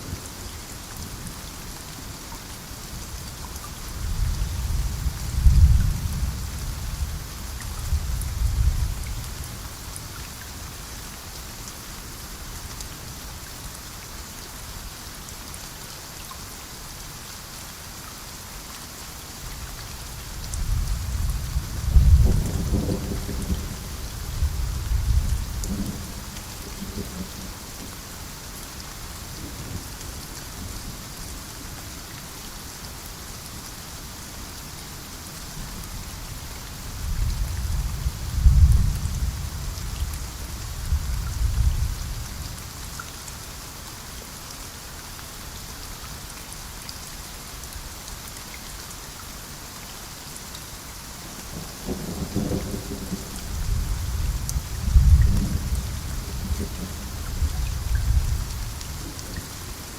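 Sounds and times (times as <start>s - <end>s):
steady rain falling: 0.0s - 59.9s
rolling thunder: 20.6s - 26.2s, 37.1s - 40.1s, 51.8s - 59.4s.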